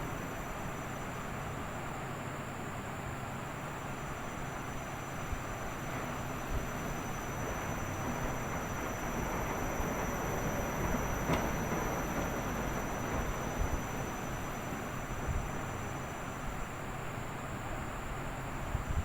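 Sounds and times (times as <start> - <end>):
faint high whine: 0.0 - 19.0
washing machine running: 3.4 - 17.6.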